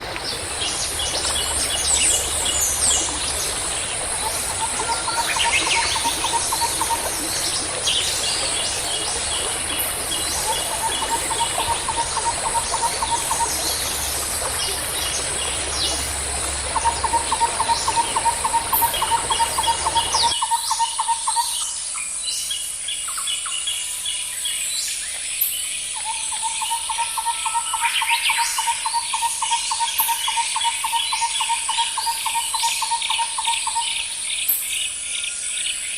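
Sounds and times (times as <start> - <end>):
birds calling and singing: 0.0 - 21.7.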